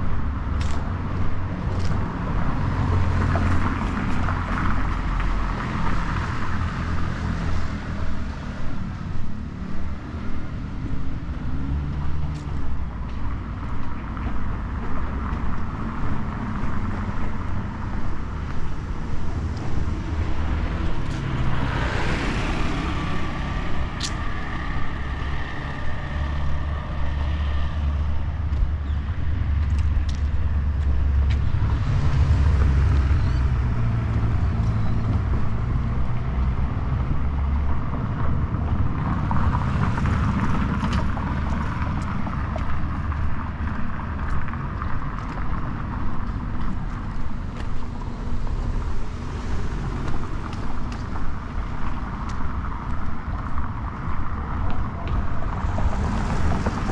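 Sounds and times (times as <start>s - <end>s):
cars passing with low rumble: 0.0s - 56.9s
vehicle whine: 0.0s - 56.9s
footsteps: 22.6s - 35.6s.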